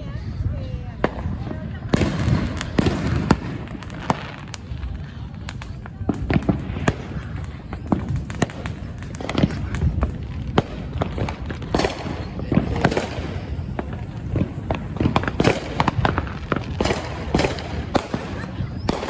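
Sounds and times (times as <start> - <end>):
fireworks bangs and pops: 0.0 - 19.0.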